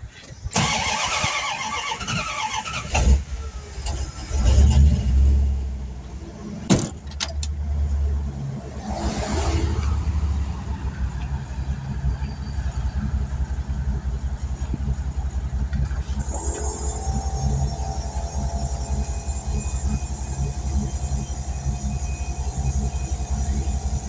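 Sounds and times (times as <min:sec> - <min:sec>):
engine throbbing rumble: 0:00.0 - 0:24.0.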